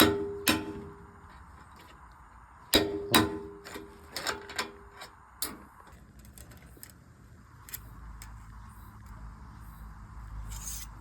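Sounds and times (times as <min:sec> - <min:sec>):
metal clanks: 0:00.0 - 0:02.0, 0:02.7 - 0:06.8
light metal taps and ticks: 0:00.0 - 0:07.0, 0:07.6 - 0:09.2.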